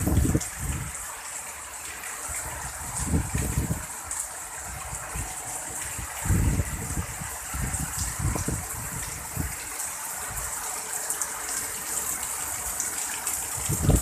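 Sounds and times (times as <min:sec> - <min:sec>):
wind rumbling on microphone: 0:00.0 - 0:01.1, 0:02.3 - 0:10.6, 0:13.4 - 0:14.0
heavy rain hissing: 0:00.0 - 0:14.0.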